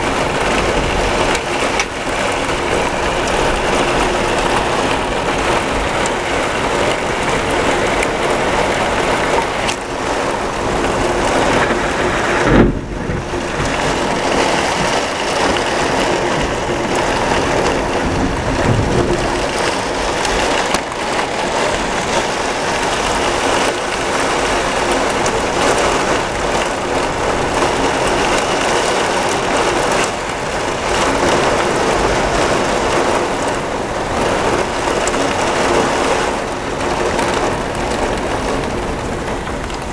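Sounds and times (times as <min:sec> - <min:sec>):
heavy rain pouring: 0:00.0 - 0:39.9
low thunder boom: 0:11.7 - 0:14.2.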